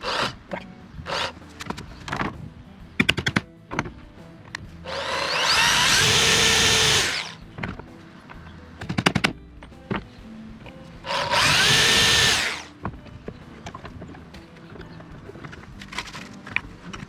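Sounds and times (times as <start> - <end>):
power drill boring through plastic: 0.0 - 0.4, 4.9 - 7.4, 11.0 - 12.7.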